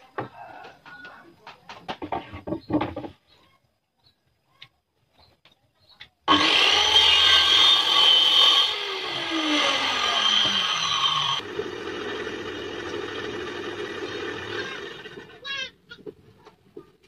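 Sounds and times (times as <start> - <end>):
power tool cutting wood: 6.3 - 15.5.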